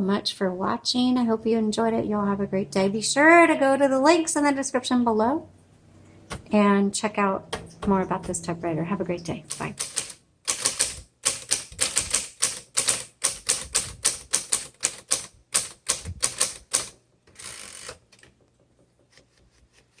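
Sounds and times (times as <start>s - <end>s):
typewriter key strikes: 9.5s - 17.0s
faint typewriter ticks: 9.5s - 17.6s.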